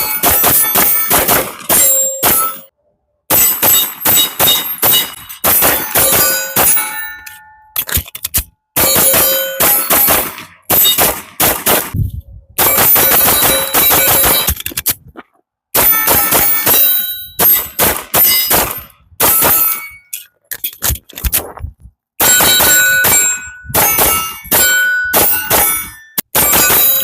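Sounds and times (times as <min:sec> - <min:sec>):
rapid metallic clanging: 0:00.0 - 0:02.7, 0:03.3 - 0:11.4, 0:12.6 - 0:14.8, 0:22.2 - 0:27.0.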